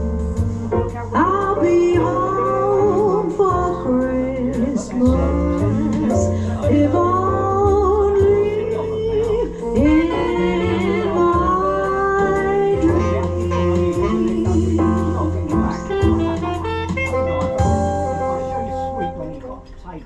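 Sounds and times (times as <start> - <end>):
backing track with bass and guitar: 0.0 - 20.0
woman singing long held notes: 1.2 - 15.2.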